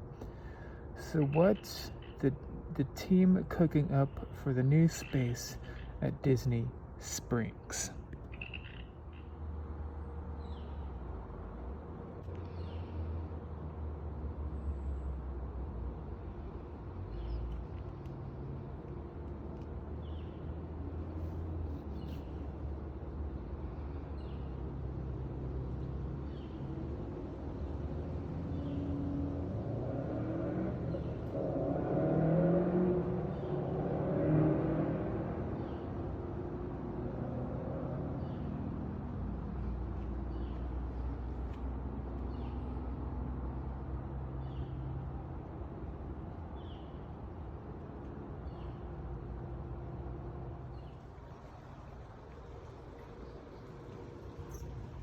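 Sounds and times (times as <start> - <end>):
distant road traffic rumble: 0.0 - 55.0.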